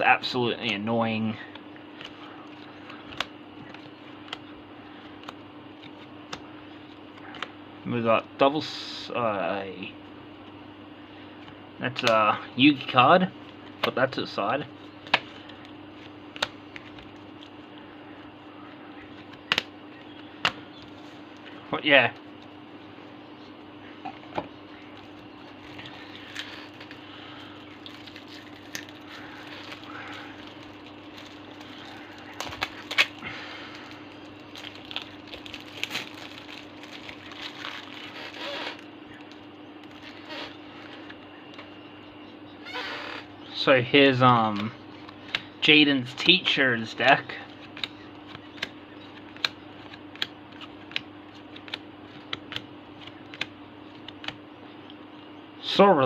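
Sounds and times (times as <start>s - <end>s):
steady low hum: 0.0s - 56.0s
cards snapping: 2.8s - 4.5s, 15.0s - 17.5s, 19.2s - 21.5s, 47.6s - 54.4s
trading cards rustling: 24.2s - 41.3s, 47.5s - 54.4s.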